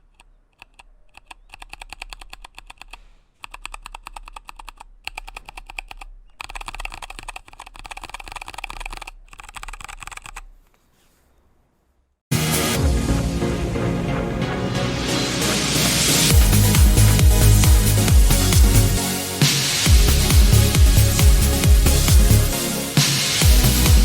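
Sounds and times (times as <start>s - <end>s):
mechanical keyboard key clacks: 0.0s - 10.5s.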